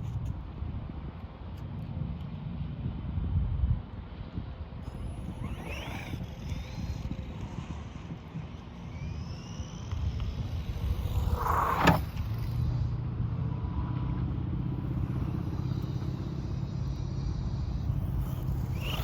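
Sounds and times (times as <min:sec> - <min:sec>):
vehicle engine rumble: 0:04.1 - 0:19.0.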